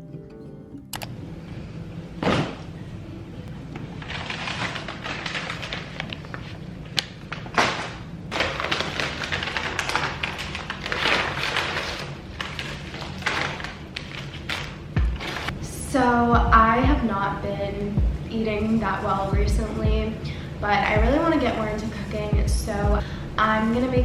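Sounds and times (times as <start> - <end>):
rustling and handling noises: 3.5 - 15.5.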